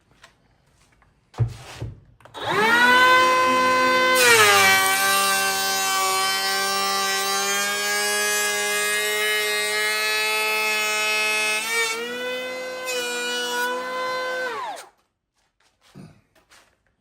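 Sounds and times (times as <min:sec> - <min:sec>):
hand planer high whine: 0:02.4 - 0:15.0.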